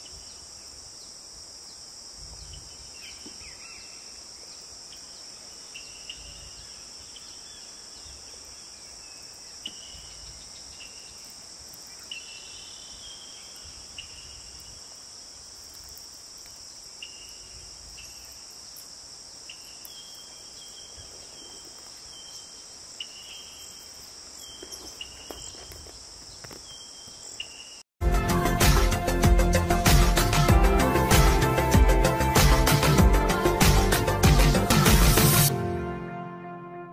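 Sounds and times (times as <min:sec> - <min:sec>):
crickets droning: 0:00.0 - 0:27.9.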